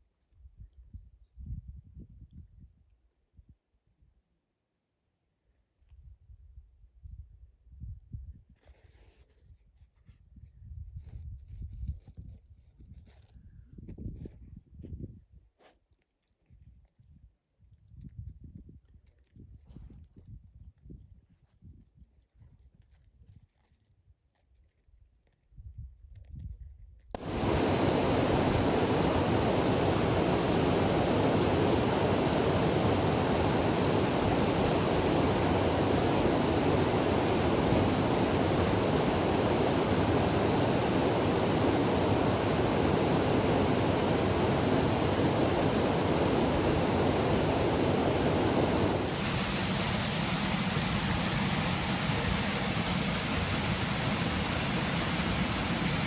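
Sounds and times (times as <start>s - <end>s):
waterfall roaring: 27.2s - 56.0s.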